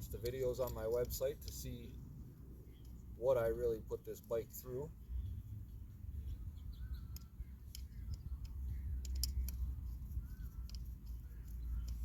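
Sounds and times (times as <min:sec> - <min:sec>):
steady low rumble: 0:00.0 - 0:12.0
screwdriver clicks and taps: 0:10.6 - 0:11.2.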